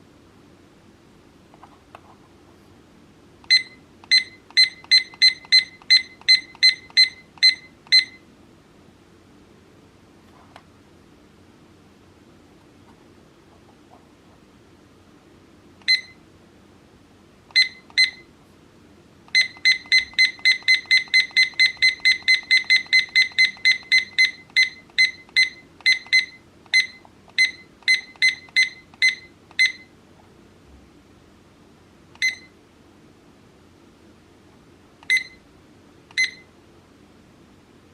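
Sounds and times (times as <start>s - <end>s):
faint low hum: 0.0s - 37.9s
high electronic clock beeps: 3.5s - 8.2s, 15.8s - 16.2s, 17.5s - 18.3s, 19.3s - 29.9s, 32.2s - 32.5s, 35.0s - 35.4s, 36.1s - 36.5s.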